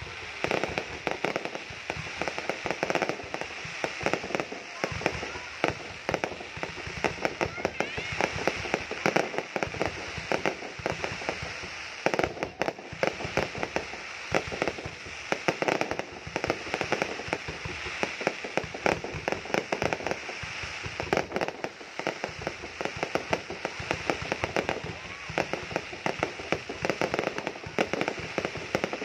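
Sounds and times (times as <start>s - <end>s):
fireworks crackling and popping: 0.0s - 29.0s
steady hiss: 0.0s - 29.0s.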